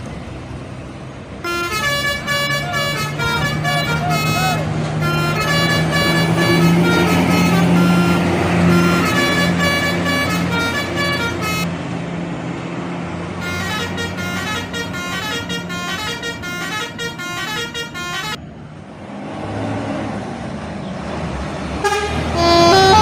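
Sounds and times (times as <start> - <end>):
bus engine hum: 0.0 - 23.0
musical air horn melody: 1.4 - 11.7, 13.4 - 18.4, 21.8 - 23.0.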